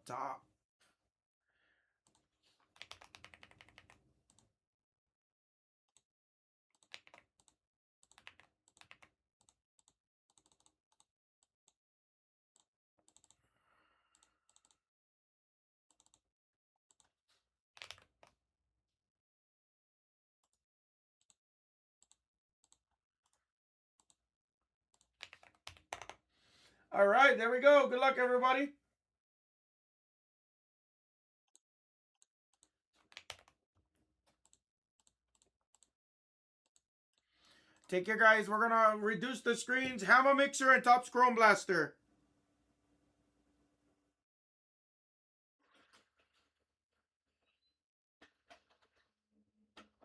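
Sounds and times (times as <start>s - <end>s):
computer keyboard clicking: 2.8s - 4.4s, 6.8s - 11.1s, 25.0s - 26.2s, 32.6s - 33.5s.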